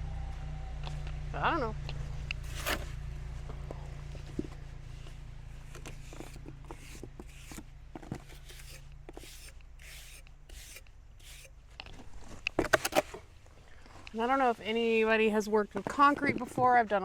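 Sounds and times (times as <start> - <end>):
low steady hum: 0.0 - 17.0
hand tool scraping: 2.2 - 14.5.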